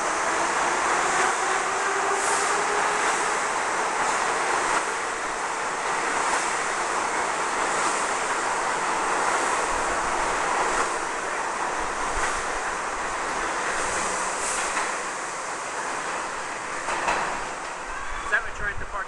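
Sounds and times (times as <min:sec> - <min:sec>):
subway train running on track: 0:00.0 - 0:19.0.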